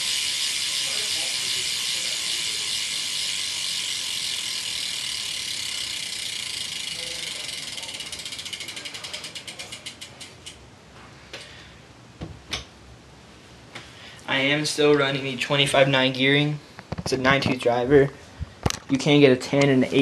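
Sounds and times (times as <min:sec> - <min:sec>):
bike hub freewheeling ratchet: 0:00.0 - 0:10.6.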